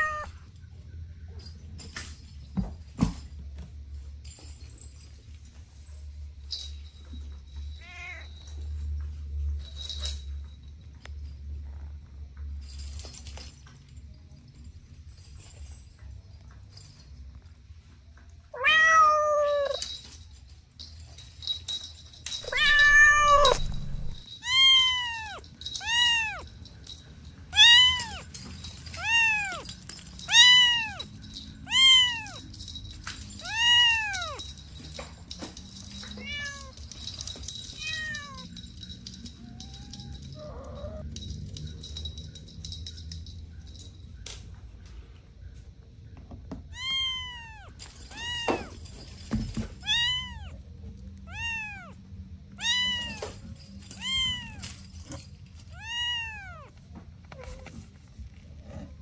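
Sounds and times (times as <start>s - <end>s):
cat meowing: 0.0s - 0.4s, 7.8s - 8.3s, 18.6s - 19.8s, 22.4s - 26.5s, 27.5s - 28.3s, 28.9s - 29.7s, 30.3s - 32.4s, 33.4s - 34.4s, 36.2s - 36.8s, 37.8s - 38.5s, 39.4s - 41.1s, 46.7s - 48.9s, 49.8s - 50.6s, 51.2s - 52.0s, 52.6s - 54.8s, 55.7s - 57.8s.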